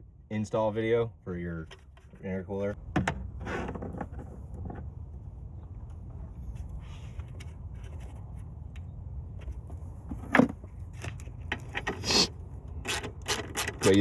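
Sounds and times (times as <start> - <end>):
rustling scrape: 6.3 - 8.5
tools clicking and scraping: 11.1 - 14.0.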